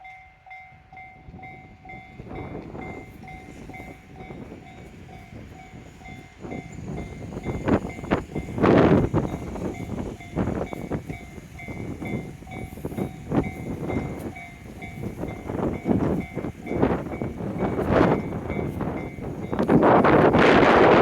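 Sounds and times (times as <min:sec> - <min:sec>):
level crossing alarm bell: 0:00.0 - 0:20.4.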